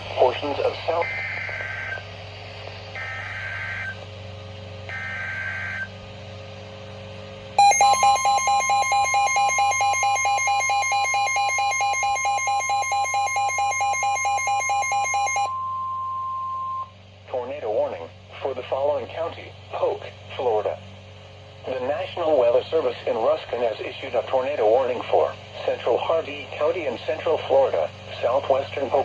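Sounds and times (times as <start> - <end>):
loud pulsing alarm tone: 0.9 - 2.0, 2.9 - 4.0, 4.9 - 6.0, 7.6 - 16.9
warbling data screeches: 0.9 - 2.0, 3.0 - 4.0, 7.6 - 15.5
steady high attention tone: 7.6 - 16.9.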